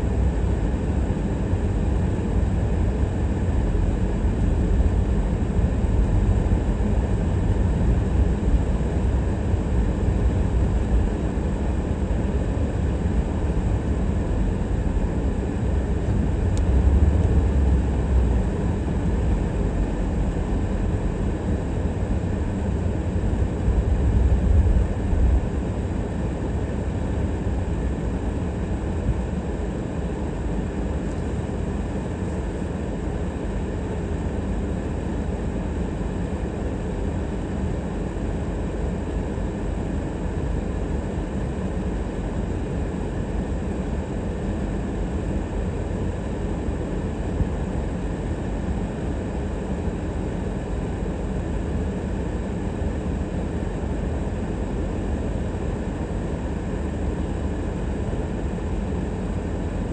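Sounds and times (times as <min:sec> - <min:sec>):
car engine rumble: 0:00.0 - 0:29.5.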